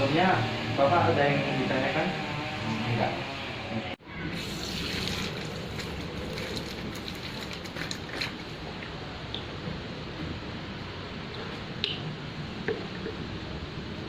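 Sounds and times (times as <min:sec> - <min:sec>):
tap water running: 0:04.4 - 0:08.5
water splashing: 0:04.4 - 0:08.6.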